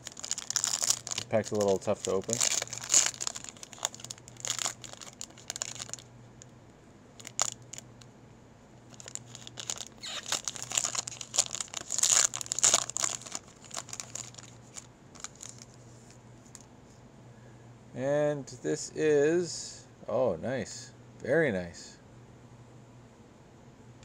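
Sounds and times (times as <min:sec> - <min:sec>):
wrapper crinkling and tearing: 0:00.0 - 0:06.1, 0:07.2 - 0:07.9, 0:08.9 - 0:15.8.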